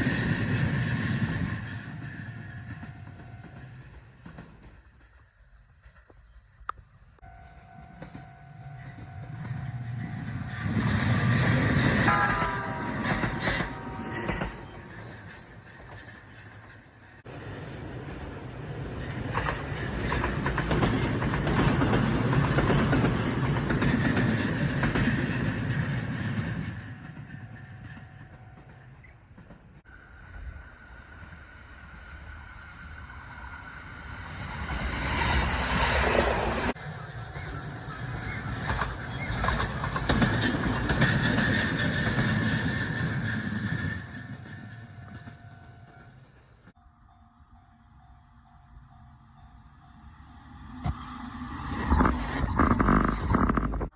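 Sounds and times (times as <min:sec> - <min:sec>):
electric train passing: 0:00.0 - 0:53.9
wheels clacking over rail joints: 0:09.2 - 0:29.9, 0:34.3 - 0:46.8.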